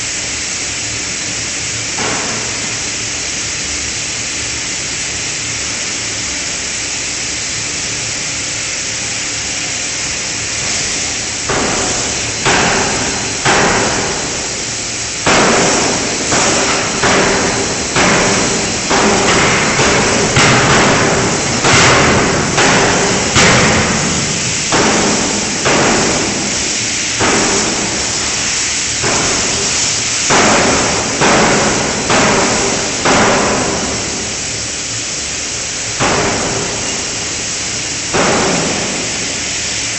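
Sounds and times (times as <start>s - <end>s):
steady hiss: 0.0s - 39.9s
forging hammer striking metal: 2.0s - 2.8s, 11.5s - 14.6s, 15.2s - 34.2s, 36.0s - 37.4s, 38.1s - 39.3s.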